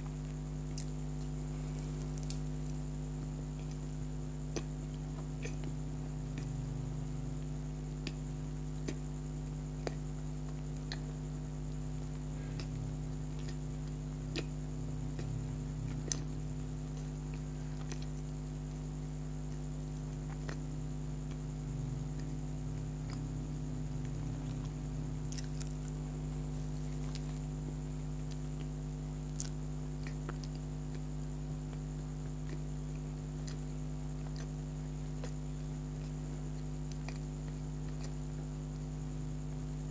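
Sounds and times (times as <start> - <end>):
soft chewing: 0.0 - 39.8
electrical hum: 0.0 - 39.9
wet mouth clicks: 4.5 - 4.8, 5.4 - 6.6, 9.8 - 10.0, 12.5 - 13.7, 14.3 - 16.4, 17.8 - 18.2, 20.3 - 20.6, 33.4 - 34.6, 35.2 - 35.4, 36.9 - 38.2.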